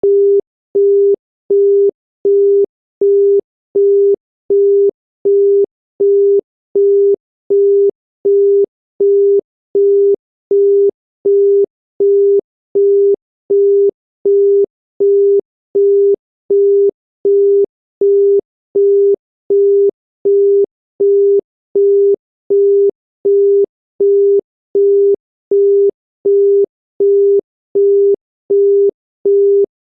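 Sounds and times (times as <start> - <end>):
telephone busy tone: 0.0 - 20.4.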